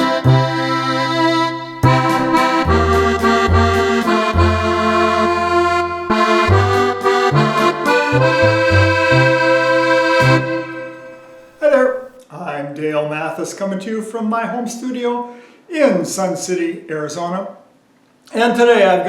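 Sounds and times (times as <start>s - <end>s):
accordion playing a tune: 0.0s - 11.6s.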